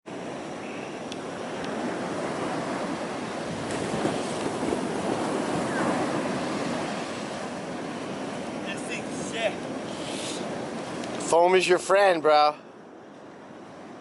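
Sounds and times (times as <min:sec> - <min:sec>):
ocean surf breaking: 0:00.1 - 0:14.0
wind on microphone: 0:00.2 - 0:11.3.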